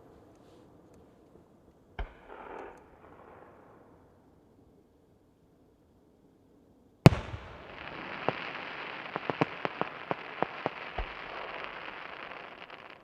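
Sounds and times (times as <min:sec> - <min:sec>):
sharp fireworks pops: 0:02.0 - 0:03.8, 0:07.1 - 0:13.0
fireworks crackling hiss: 0:07.1 - 0:13.0.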